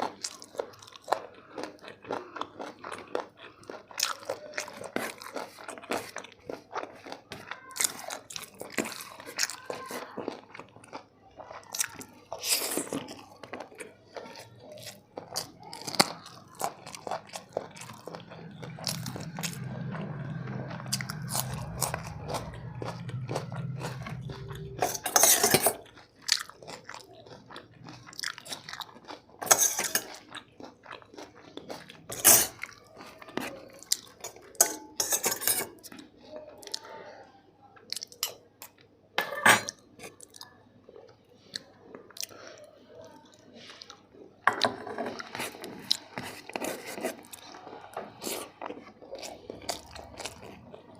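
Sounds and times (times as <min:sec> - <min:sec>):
chewing and crunching: 0:00.0 - 0:50.9
dish or cutlery clatters: 0:24.8 - 0:25.8, 0:29.4 - 0:30.2, 0:32.1 - 0:32.6, 0:34.2 - 0:35.9, 0:39.2 - 0:39.8, 0:44.4 - 0:45.5.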